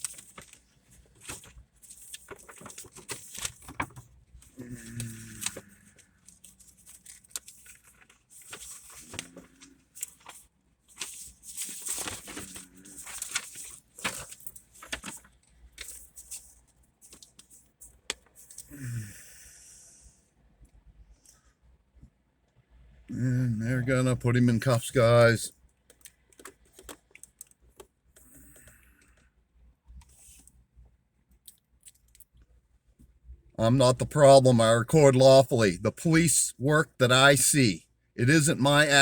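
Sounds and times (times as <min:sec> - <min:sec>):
crackling and rustling: 0:00.0 - 0:18.7.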